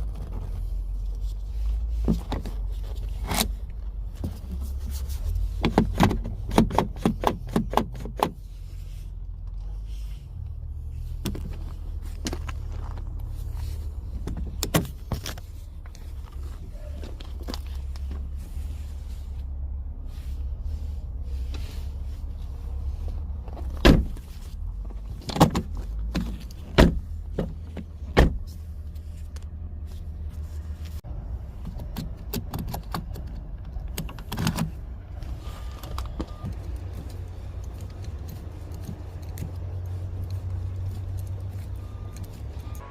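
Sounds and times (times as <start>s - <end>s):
sharp clicks and knocks: 5.6s - 8.4s
steady low rumble: 8.3s - 42.9s.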